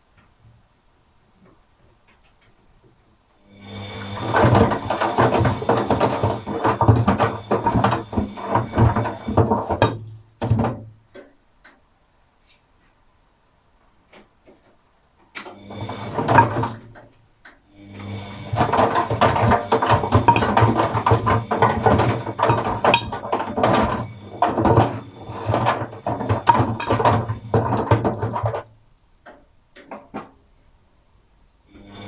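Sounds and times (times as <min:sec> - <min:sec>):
washing machine motor hum: 0:03.4 - 0:11.3, 0:15.3 - 0:30.3, 0:31.6 - 0:32.0
knocks and clatter inside drum: 0:03.9 - 0:11.4, 0:15.2 - 0:17.2, 0:18.0 - 0:30.5.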